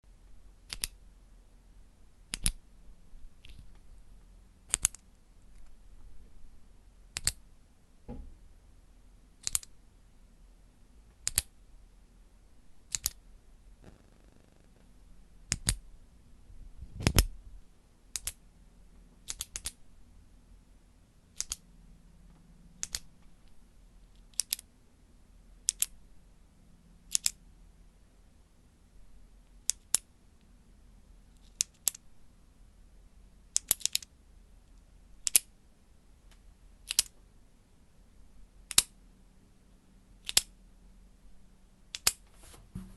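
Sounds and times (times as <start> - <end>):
retractable pen clicking: 0.7 - 1.0, 2.3 - 2.6, 4.7 - 5.0, 7.1 - 7.4, 9.4 - 9.7, 12.9 - 13.2, 15.5 - 15.8, 19.2 - 19.8, 21.4 - 21.6, 22.8 - 23.1, 24.2 - 24.6, 25.7 - 26.0, 27.1 - 27.4, 31.4 - 32.0, 33.5 - 34.1, 35.2 - 35.5, 36.9 - 37.1, 38.7 - 38.9, 40.2 - 40.5.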